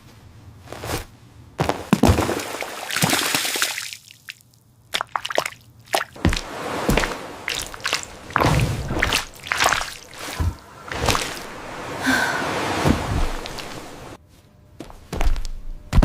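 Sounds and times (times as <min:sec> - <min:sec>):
wet food squishing: 0:04.2 - 0:11.6.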